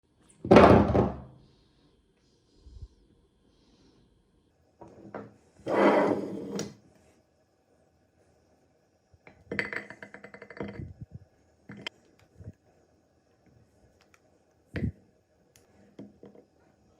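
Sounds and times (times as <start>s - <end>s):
hard objects knocking: 9.3s - 11.1s.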